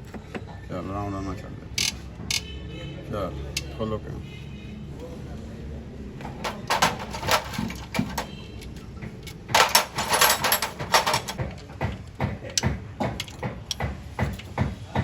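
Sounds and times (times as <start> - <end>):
metal tools clinking on engine parts: 6.2 - 11.4.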